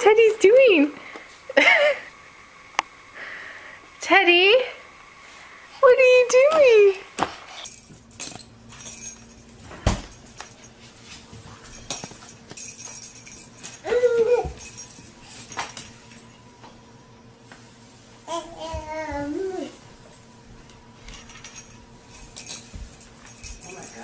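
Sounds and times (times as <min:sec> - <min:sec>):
dog whimpering: 0:13.8 - 0:14.6.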